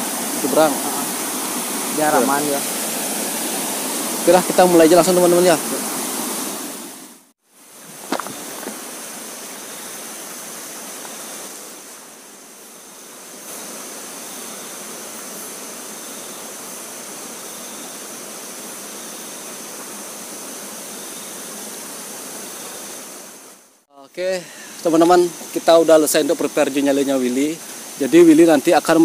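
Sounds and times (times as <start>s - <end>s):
river current rushing: 0.0s - 12.2s.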